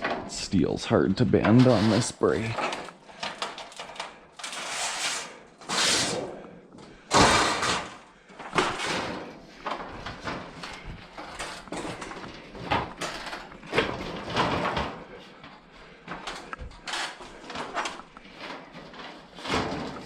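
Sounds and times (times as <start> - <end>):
sheet steel clanking and scraping: 1.2 - 6.3, 16.1 - 20.0.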